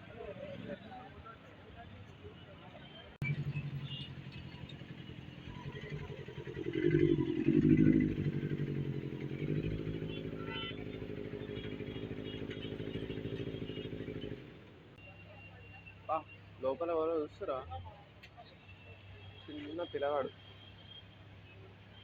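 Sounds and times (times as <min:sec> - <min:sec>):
motorcycle engine revving and idling: 0:03.2 - 0:14.9.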